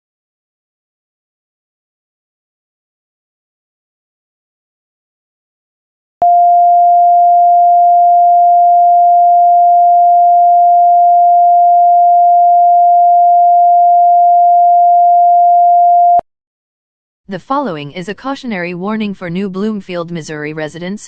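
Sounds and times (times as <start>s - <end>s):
loud steady sine tone: 6.2s - 16.2s.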